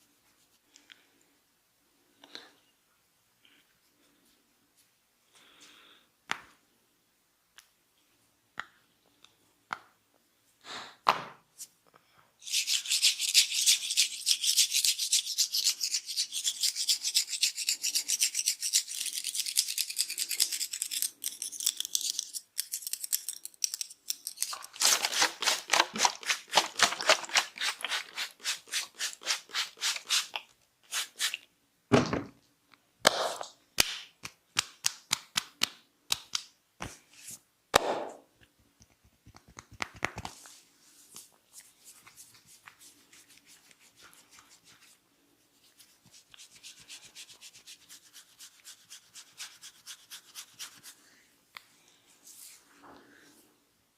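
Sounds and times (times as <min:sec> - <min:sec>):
fingers scratching through hair: 0:24.5 - 0:31.4, 0:45.6 - 0:51.0.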